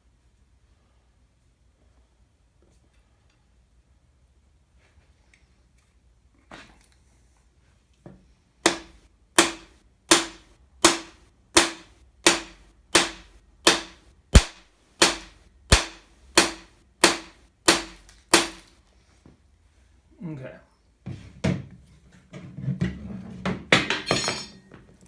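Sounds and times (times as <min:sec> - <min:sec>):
hammer striking metal driver: 0:08.6 - 0:18.6.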